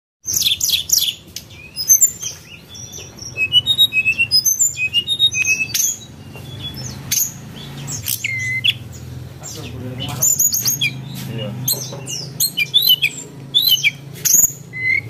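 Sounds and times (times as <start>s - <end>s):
birds chirping and squawking: 0.2s - 15.0s.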